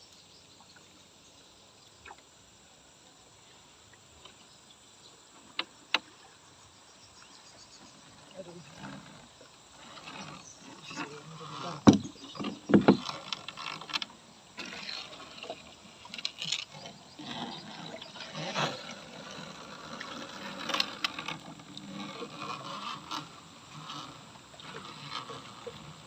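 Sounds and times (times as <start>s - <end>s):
knocks and scrapes of handling: 9.8s - 26.0s.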